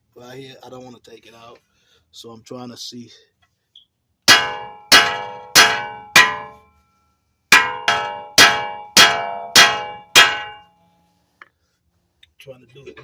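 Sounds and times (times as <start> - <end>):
hammer clanging on steel: 4.3 - 6.7, 7.6 - 10.7.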